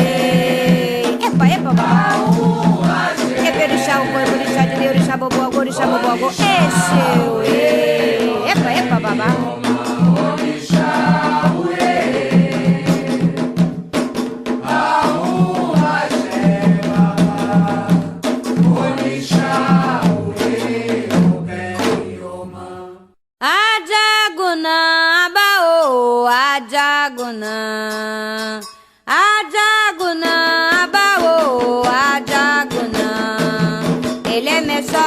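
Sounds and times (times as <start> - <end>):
voices chanting: 0.0 - 13.3, 14.6 - 18.0
steady drumming: 0.0 - 22.2, 30.1 - 35.0
single voice chanting: 5.7 - 9.8.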